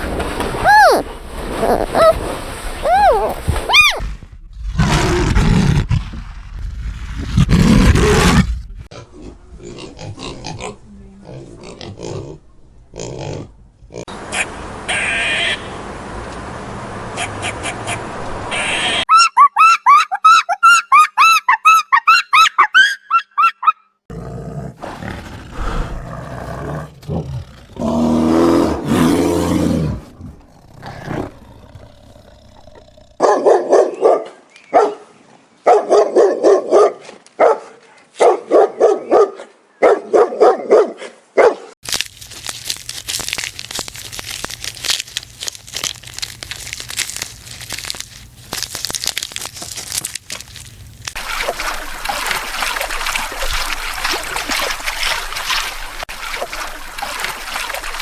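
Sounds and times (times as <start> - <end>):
low drawn-out animal call: 0.5 - 5.2
dog barking: 2.8 - 4.0, 33.2 - 41.7.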